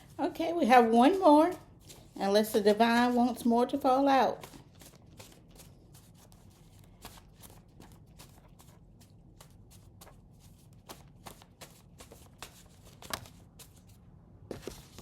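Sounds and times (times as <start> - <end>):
cards being shuffled: 1.1 - 3.5, 4.3 - 15.0.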